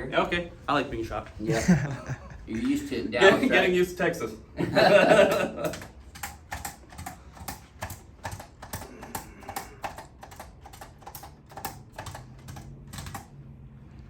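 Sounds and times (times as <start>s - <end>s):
rapid irregular clicking: 5.2s - 13.4s.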